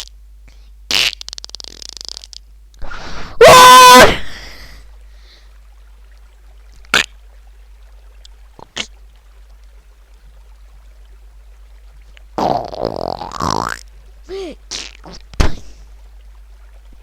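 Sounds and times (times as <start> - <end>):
comedic fart sound effect: 0.9 - 2.4, 12.4 - 13.8, 14.7 - 15.6.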